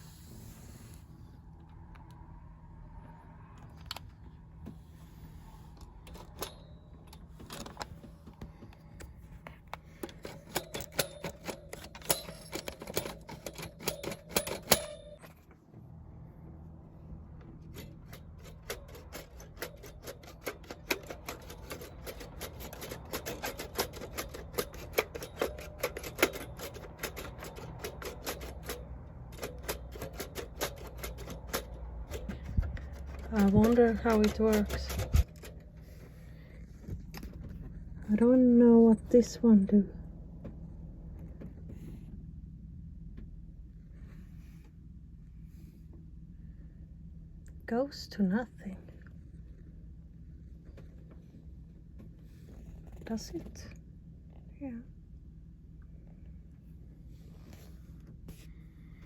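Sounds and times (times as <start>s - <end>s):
accordion mechanism clicking: 5.7s - 15.4s, 17.5s - 36.0s.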